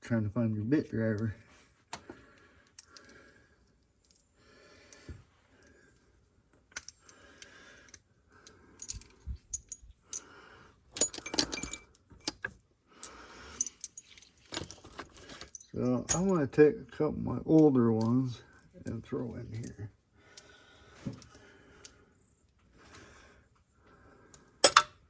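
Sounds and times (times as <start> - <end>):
metal hand tools clinking: 11.0 - 12.4, 13.0 - 16.4.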